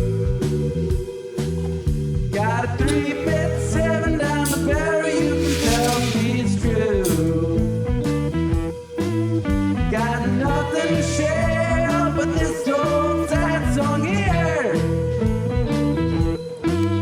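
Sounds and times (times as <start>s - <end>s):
bluesy guitar song with singing: 0.0s - 17.0s.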